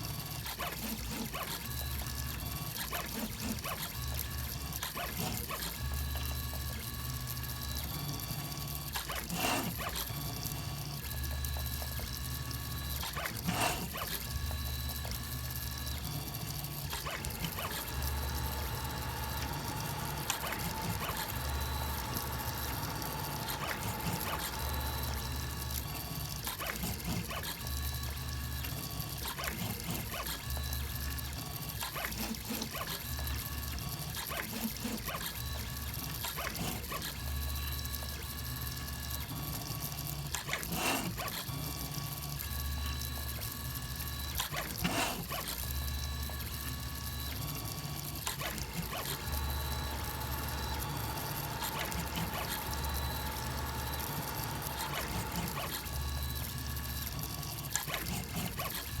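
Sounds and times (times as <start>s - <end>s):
stepper motors whining: 8.7s - 28.5s, 43.1s - 59.0s.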